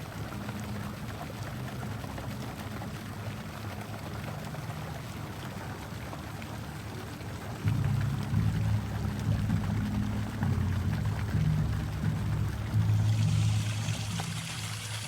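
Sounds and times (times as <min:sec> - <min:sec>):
water pouring and trickling: 0:00.0 - 0:15.0
low hum: 0:07.6 - 0:15.0.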